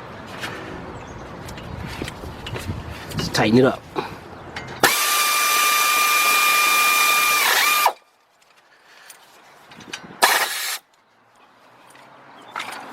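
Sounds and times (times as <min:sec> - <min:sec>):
cordless power tool whirring: 0:04.8 - 0:08.0, 0:10.2 - 0:10.8.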